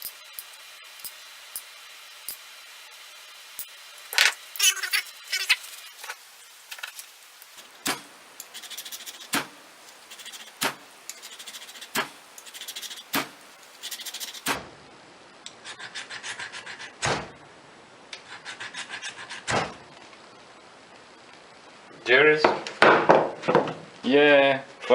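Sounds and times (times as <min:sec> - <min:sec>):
high-pitched crackling rattle: 0:00.0 - 0:02.7, 0:03.4 - 0:14.6
striker scraping ferro rod: 0:04.6 - 0:14.6.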